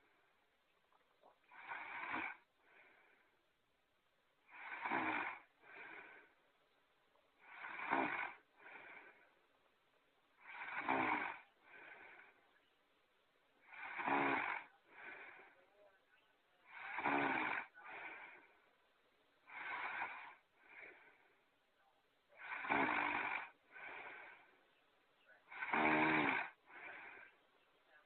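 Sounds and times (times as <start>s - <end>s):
cartoon snoring: 1.5s - 3.0s, 4.5s - 6.3s, 7.4s - 9.1s, 10.4s - 12.4s, 13.6s - 15.6s, 16.6s - 18.5s, 19.5s - 21.1s, 22.4s - 24.5s, 25.4s - 27.3s.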